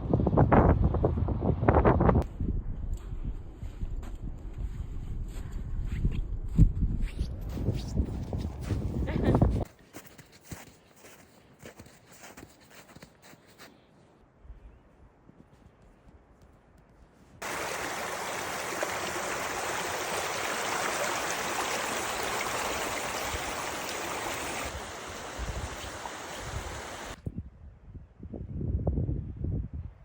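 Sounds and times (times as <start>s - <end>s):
rushing water: 17.4s - 27.2s.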